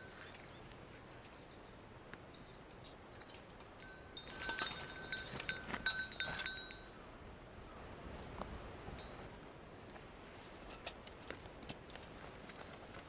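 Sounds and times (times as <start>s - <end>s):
light metal objects clinking: 3.3s - 7.0s.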